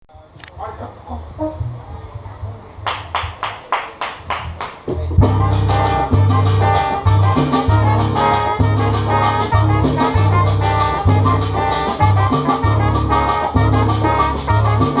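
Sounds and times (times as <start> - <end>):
percussion: 2.9 - 15.0
salsa band playing: 4.9 - 15.0
brass section: 5.2 - 15.0
repeating bass line: 5.2 - 15.0.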